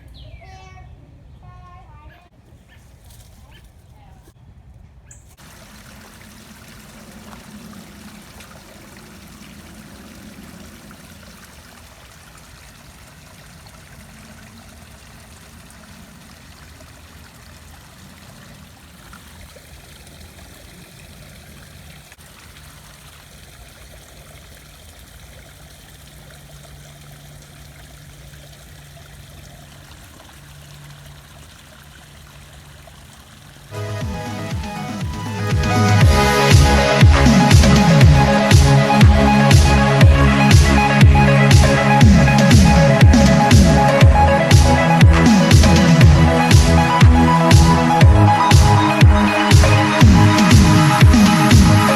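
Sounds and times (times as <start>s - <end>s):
water trickling: 5.4s - 51.9s.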